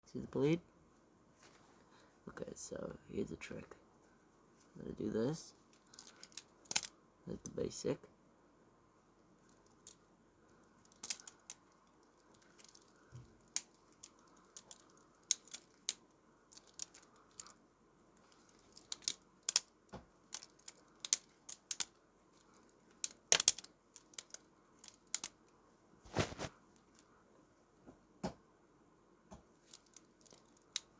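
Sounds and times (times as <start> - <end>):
butterfly knife clicking and clacking: 5.8 - 6.9, 10.9 - 11.8, 13.6 - 17.5, 18.7 - 19.7, 20.3 - 22.0, 23.0 - 25.4.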